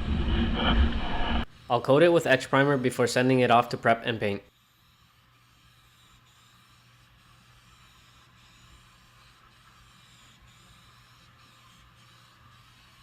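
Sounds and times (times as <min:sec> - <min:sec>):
low steady hum: 0:00.0 - 0:01.5.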